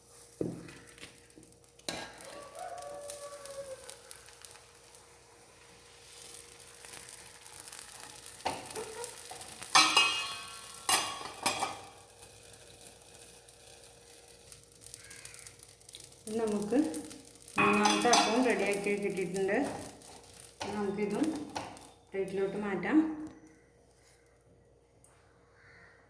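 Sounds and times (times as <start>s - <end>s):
batter sizzling in a hot pan: 0.0s - 22.6s
metallic clanks of utensil: 8.4s - 12.0s, 16.9s - 22.4s.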